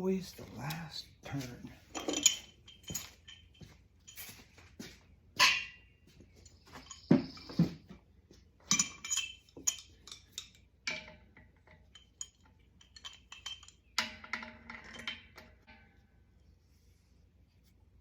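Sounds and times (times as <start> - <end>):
metal fittings clinking: 1.9 - 4.4, 6.4 - 7.7, 8.6 - 15.8.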